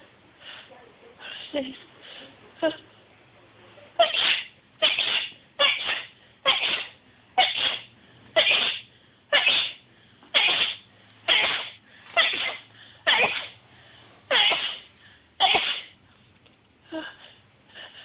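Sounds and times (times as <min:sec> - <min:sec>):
person sneezing: 0:04.0 - 0:13.6, 0:14.3 - 0:16.0.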